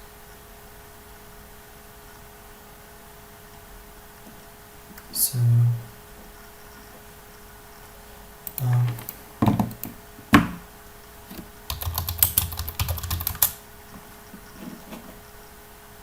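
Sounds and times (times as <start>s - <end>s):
keyboard typing: 8.4s - 10.0s, 11.3s - 13.6s.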